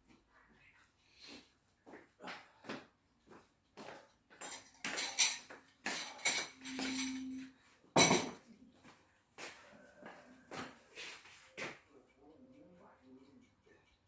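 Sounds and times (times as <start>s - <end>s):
kitchen utensils and pans clattering: 4.4s - 7.4s, 8.0s - 8.4s.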